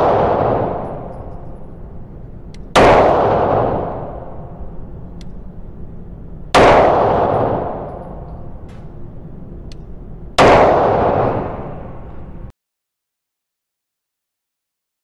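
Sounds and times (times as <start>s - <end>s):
pistol shots echoing: 0.0s - 5.5s, 6.5s - 9.1s, 10.4s - 12.2s.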